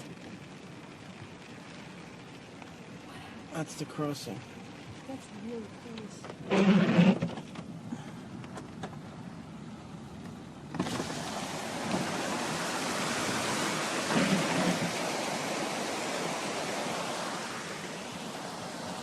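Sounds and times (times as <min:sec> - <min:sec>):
floodwater rushing: 0:10.7 - 0:19.0
heavy rain: 0:10.9 - 0:19.0.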